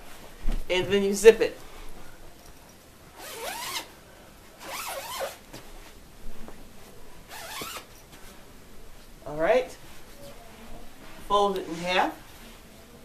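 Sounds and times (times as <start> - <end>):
zipper being pulled closed: 3.2 - 3.9, 4.6 - 5.4, 7.3 - 7.9.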